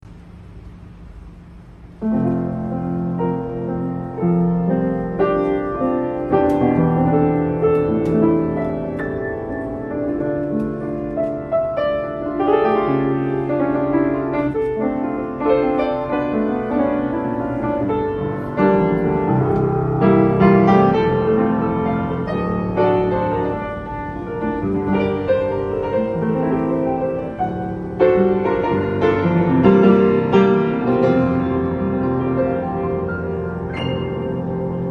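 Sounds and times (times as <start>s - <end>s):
upright piano playing: 1.8s - 34.9s.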